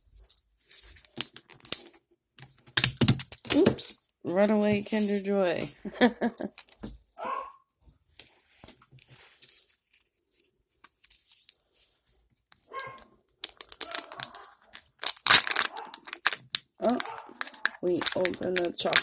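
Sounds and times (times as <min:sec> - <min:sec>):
foil wrapper crinkling and tearing: 0:13.4 - 0:19.0.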